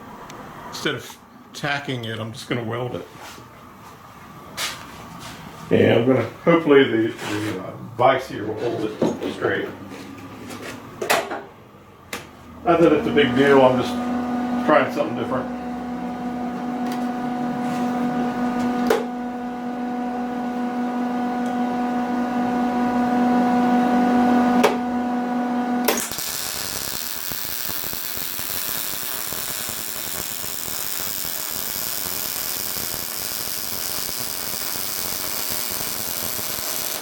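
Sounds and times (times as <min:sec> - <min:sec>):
electrical hum: 0:00.0 - 0:37.0
welding arc crackling sizzle: 0:25.9 - 0:37.0.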